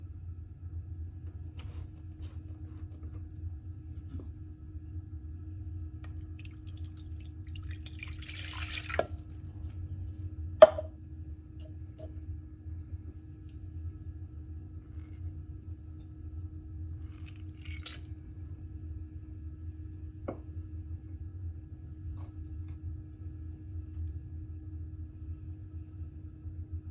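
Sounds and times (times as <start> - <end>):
steady low hum: 0.0 - 26.9
water pouring: 6.0 - 9.4, 17.1 - 18.1.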